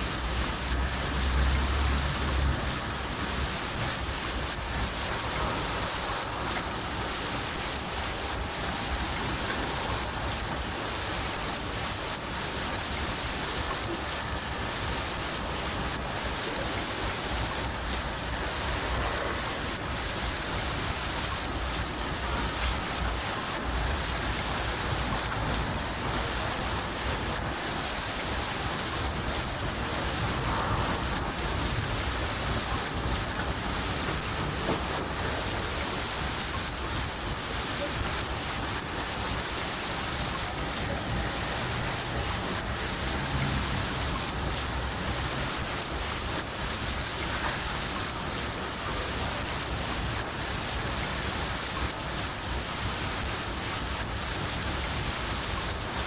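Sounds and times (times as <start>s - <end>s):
cricket chirping: 0.0s - 56.0s
rain hiss: 0.0s - 56.0s
low rumble of thunder: 28.6s - 36.0s.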